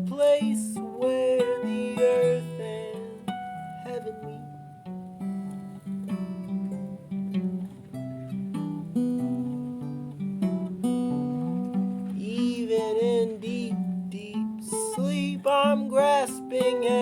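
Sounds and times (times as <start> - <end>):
person singing: 0.0 - 4.7, 12.1 - 17.0
acoustic guitar: 0.0 - 17.0.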